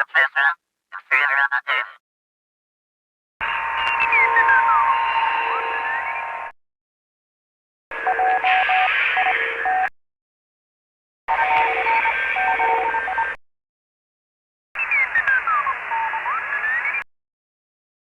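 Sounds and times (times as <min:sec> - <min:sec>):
radio static bursts: 0:00.0 - 0:02.0.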